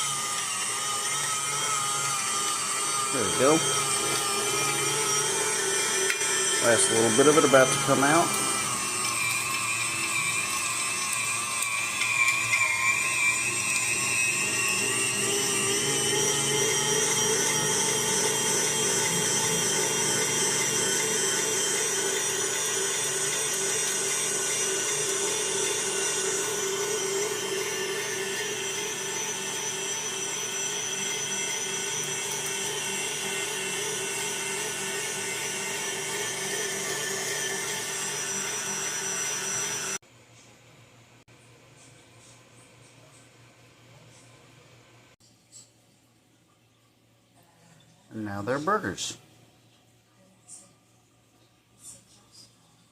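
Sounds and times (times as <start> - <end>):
electric meat grinder whining: 0.0 - 40.0.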